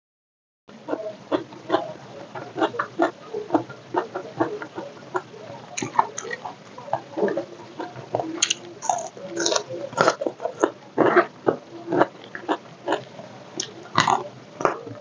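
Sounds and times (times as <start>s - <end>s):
wet mouth noises: 0.9s - 14.9s
crunching and chewing crispy food: 7.2s - 14.8s.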